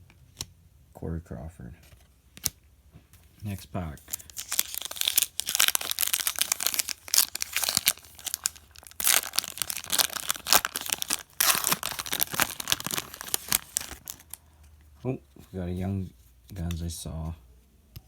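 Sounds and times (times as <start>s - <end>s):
wrapper tearing and crinkling: 4.0s - 14.4s.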